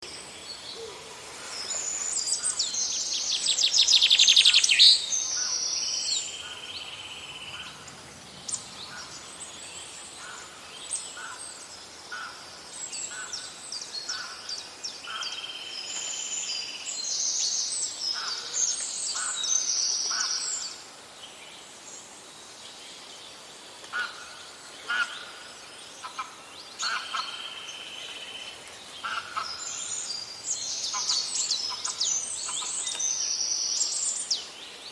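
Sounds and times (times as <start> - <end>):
songbirds whistling and trilling: 0.0 - 7.8, 26.0 - 34.9.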